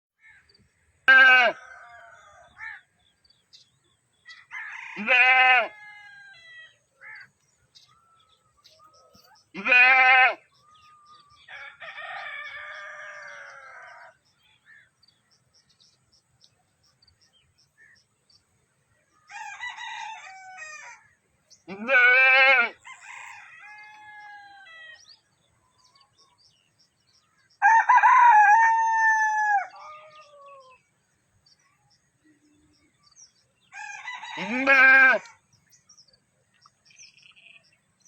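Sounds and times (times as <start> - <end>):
goats bleating: 1.1 - 1.6, 5.0 - 5.7, 9.6 - 10.4, 21.7 - 22.8, 34.4 - 35.3.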